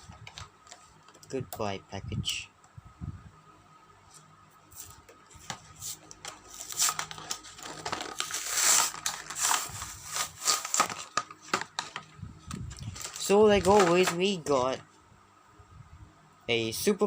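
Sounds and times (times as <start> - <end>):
packaging crinkling and tearing: 5.8 - 14.6.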